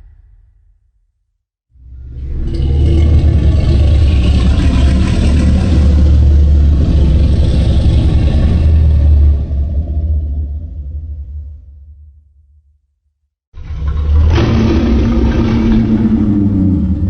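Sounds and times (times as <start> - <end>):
deep rumbling monster roar: 1.8 - 12.0, 13.6 - 17.0.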